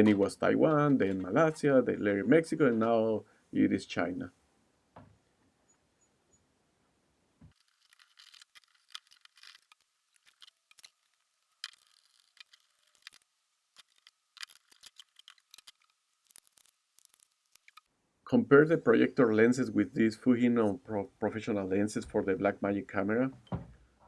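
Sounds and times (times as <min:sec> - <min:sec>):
small parts clicking and rustling: 0:07.5 - 0:17.9.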